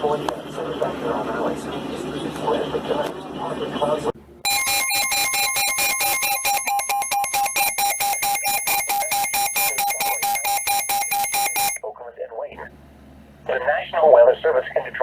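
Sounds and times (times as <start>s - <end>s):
pulsing two-tone alarm: 4.5s - 11.8s.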